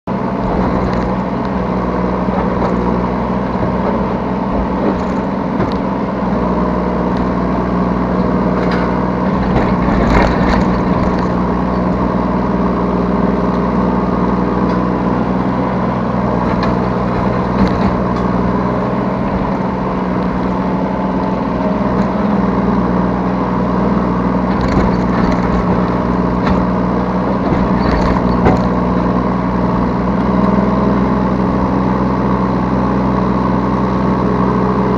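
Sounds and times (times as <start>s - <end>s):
excavator diesel engine running: 0.0s - 34.9s
excavator bucket clatters: 0.2s - 7.5s, 8.2s - 12.4s, 16.2s - 23.0s, 24.2s - 30.6s.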